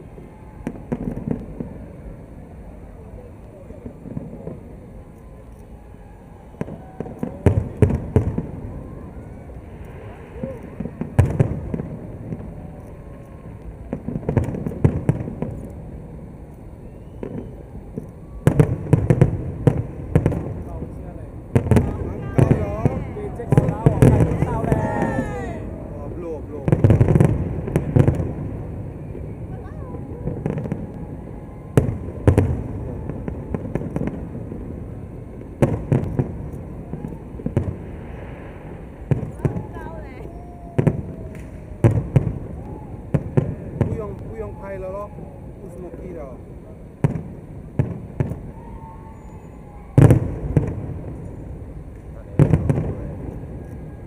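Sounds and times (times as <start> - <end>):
fireworks bangs and crackles: 0.0 - 54.0.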